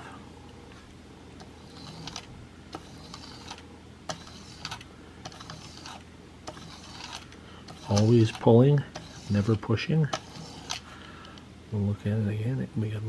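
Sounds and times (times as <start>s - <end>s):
metal scraping on cardboard: 1.4s - 10.9s.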